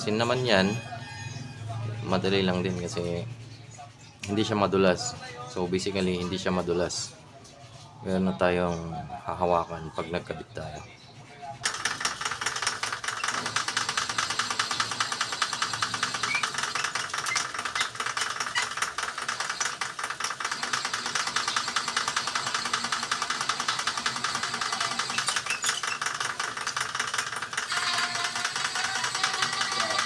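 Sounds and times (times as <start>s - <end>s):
metal lathe rattling: 11.6s - 30.0s.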